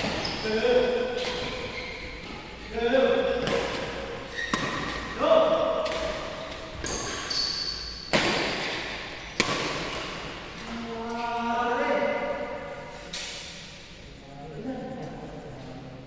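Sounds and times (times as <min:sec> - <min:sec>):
rackets hitting shuttlecock: 0:00.0 - 0:02.6, 0:03.2 - 0:10.8.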